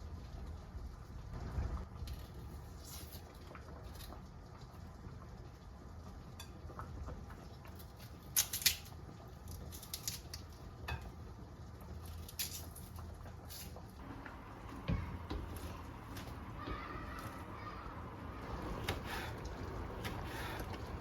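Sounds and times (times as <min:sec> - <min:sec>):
steady low hum: 0:14.0 - 0:21.0.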